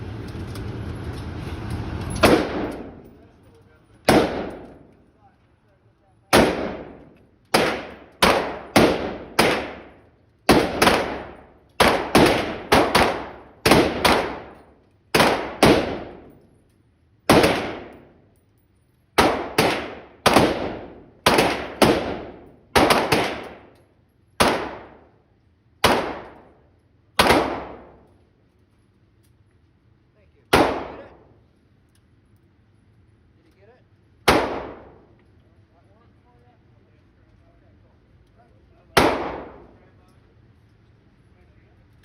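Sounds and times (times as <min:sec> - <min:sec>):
gunshots: 0:02.2 - 0:03.3, 0:04.0 - 0:04.9, 0:06.3 - 0:16.4, 0:17.3 - 0:18.2, 0:19.2 - 0:23.8, 0:24.4 - 0:25.1, 0:25.8 - 0:26.6, 0:27.2 - 0:28.1, 0:30.5 - 0:31.3, 0:34.3 - 0:35.2, 0:38.9 - 0:39.9.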